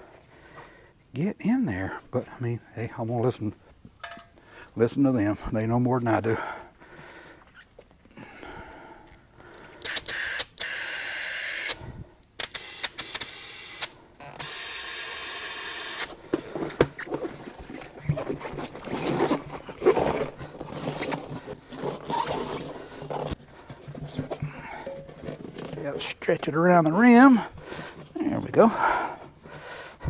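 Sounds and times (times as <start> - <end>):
air chuck clicks: 9.8 - 10.8, 12.4 - 15.0
rubber tire scraping on rim: 16.2 - 29.7.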